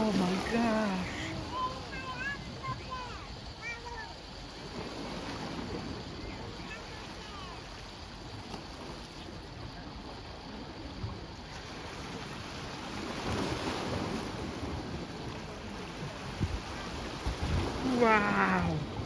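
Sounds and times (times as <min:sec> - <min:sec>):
wind noise on microphone: 0:13.1 - 0:19.0.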